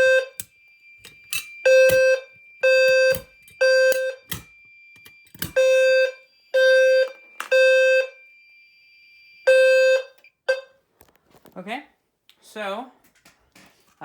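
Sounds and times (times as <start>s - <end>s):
fire alarm sounder blasts: 0.0s - 10.8s.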